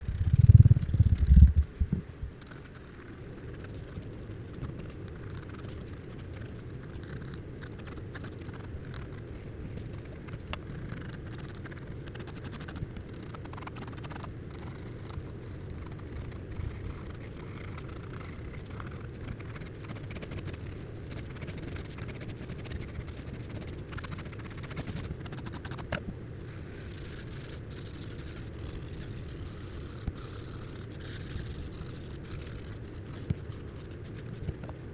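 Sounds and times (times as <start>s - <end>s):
low hum: 0.0s - 2.6s
pencil scratching on paper: 0.1s - 1.6s, 2.4s - 34.9s.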